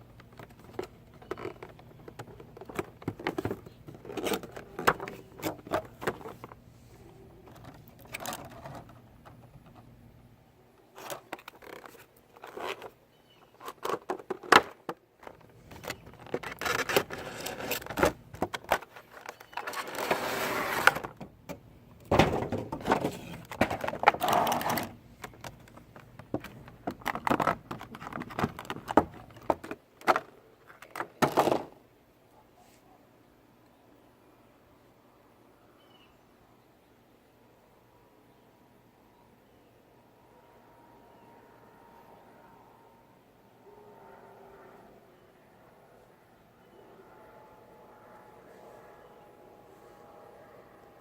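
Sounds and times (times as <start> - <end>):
plastic packaging rustling: 15.3 - 21.2.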